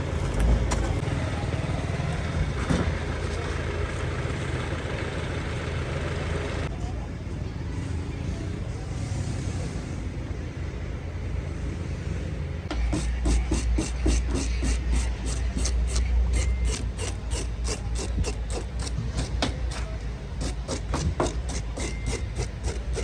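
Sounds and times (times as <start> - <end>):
rasping strokes: 12.7 - 23.0.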